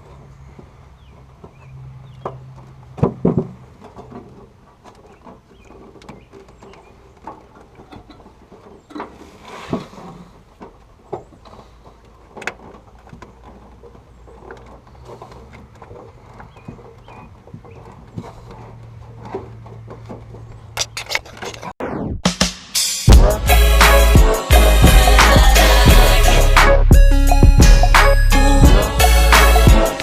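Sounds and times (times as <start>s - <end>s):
hand tools knocking and clicking: 19.8s - 21.7s.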